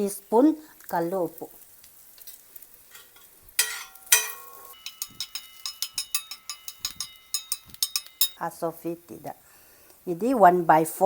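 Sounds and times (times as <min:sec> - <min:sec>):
metal spoon scraping a frying pan: 0:02.2 - 0:08.5
loud pan clanks: 0:02.9 - 0:08.4
pan ringing faintly: 0:03.6 - 0:08.4.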